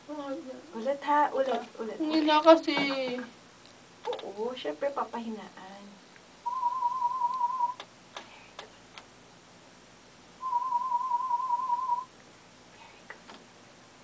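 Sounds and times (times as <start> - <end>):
warbling whistled notes: 6.5 - 7.8, 10.4 - 12.1.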